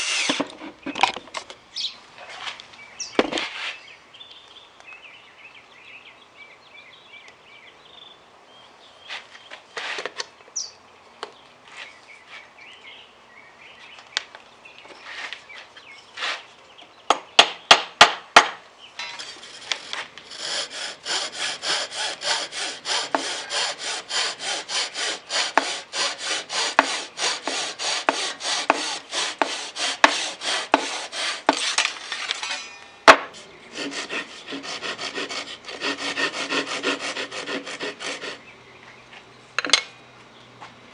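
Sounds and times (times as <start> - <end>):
hand tool rasping on wood: 19.2 - 31.8, 33.7 - 38.4.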